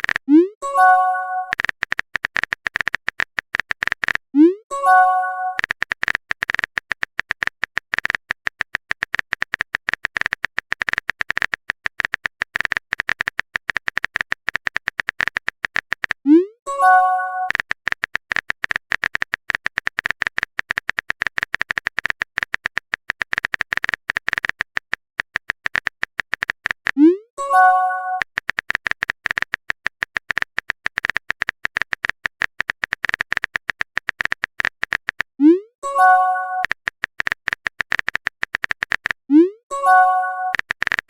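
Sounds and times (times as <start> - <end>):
phone keyboard typing clicks: 0.0 - 41.0
chime-like message alert: 0.6 - 1.5.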